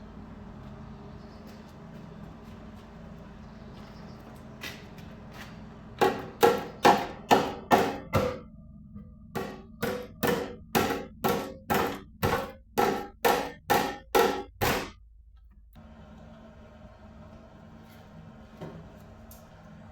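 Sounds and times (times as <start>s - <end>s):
hammer striking metal: 6.0s - 15.0s.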